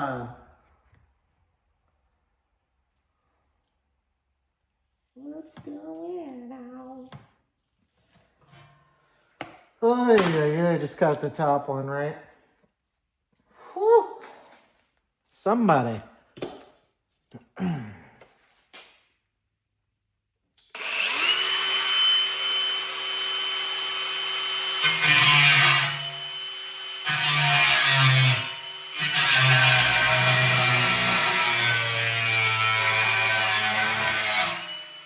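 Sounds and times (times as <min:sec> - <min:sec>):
angle grinder cutting metal: 0:20.8 - 0:35.0.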